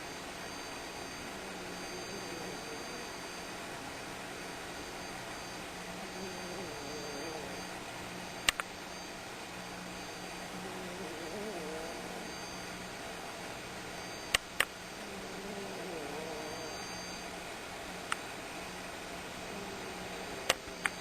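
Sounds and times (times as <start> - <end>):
steady background hiss: 0.0 - 21.0
cat snoring: 1.0 - 3.4, 6.0 - 7.7, 10.5 - 12.7, 15.0 - 17.2, 19.4 - 20.8
sharp clicks: 8.4 - 8.7.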